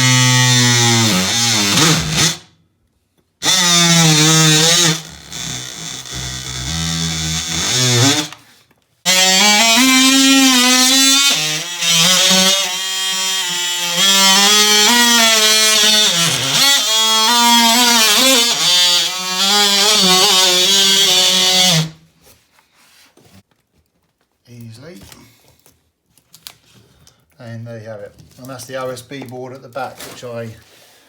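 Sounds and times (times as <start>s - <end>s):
multi-tool buzzing: 0.0s - 2.5s, 3.4s - 8.5s, 9.1s - 22.0s.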